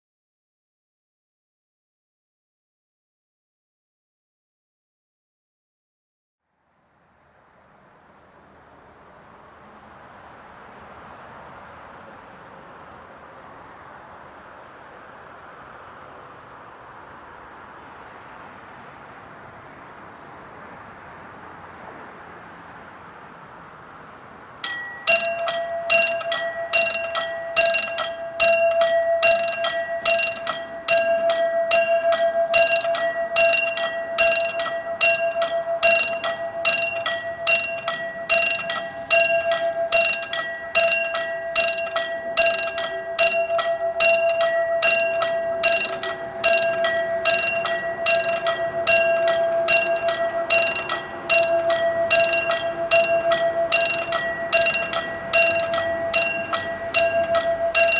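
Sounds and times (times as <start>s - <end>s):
level crossing warning bell: 22.2s - 57.9s.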